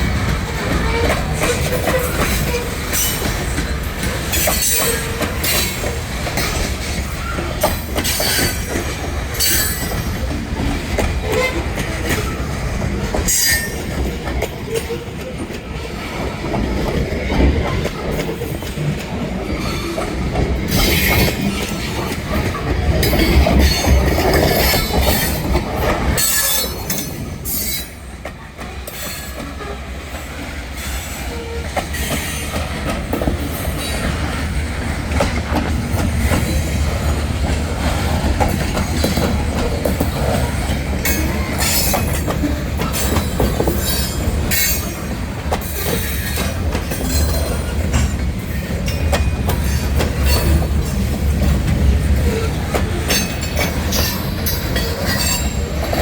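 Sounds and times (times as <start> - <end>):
train cars rumbling past: 0.0 - 56.0.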